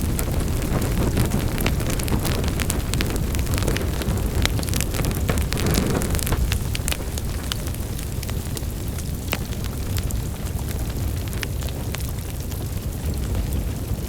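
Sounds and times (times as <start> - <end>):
wood fire crackling and popping: 0.0 - 14.0.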